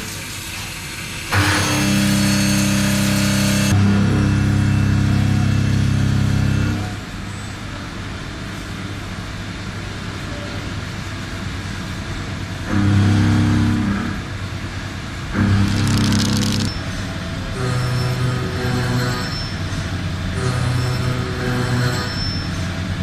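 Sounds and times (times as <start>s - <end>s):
machine tool running: 1.3s - 7.0s, 12.7s - 14.2s, 15.3s - 23.0s
low hum of drives: 12.2s - 19.0s.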